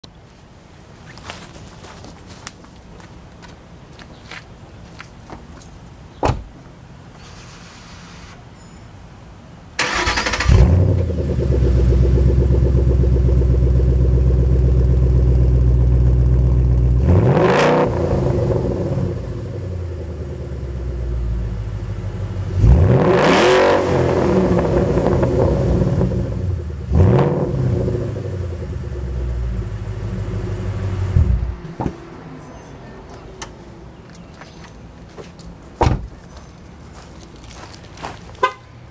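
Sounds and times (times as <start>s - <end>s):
car engine idling: 9.8s - 17.0s
car engine revving: 9.8s - 20.8s, 22.4s - 32.2s.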